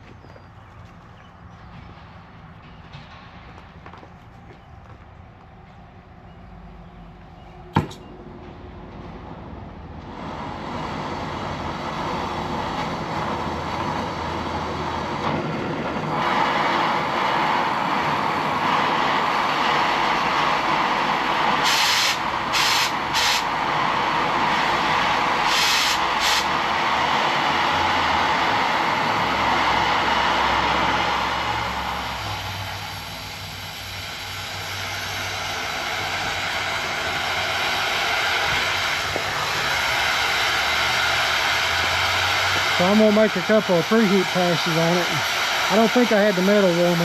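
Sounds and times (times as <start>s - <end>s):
hissing torch flame: 16.2s - 47.0s.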